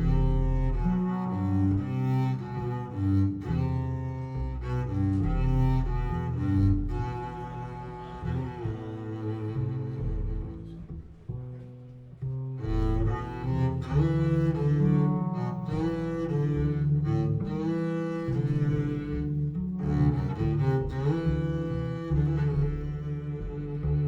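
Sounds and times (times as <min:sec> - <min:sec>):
low string notes over loudspeakers: 0:12.2 - 0:24.0.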